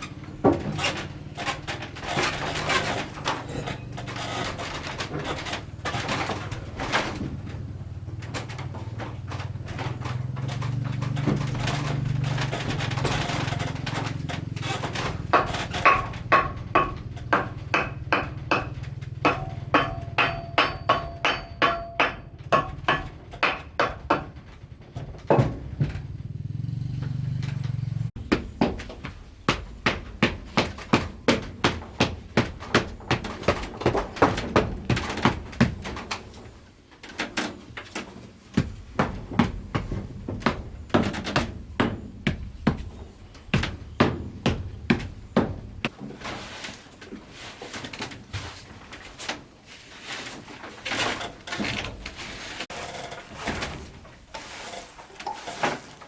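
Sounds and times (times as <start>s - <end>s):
hand tool striking wood: 9.7s - 24.5s, 28.2s - 46.8s.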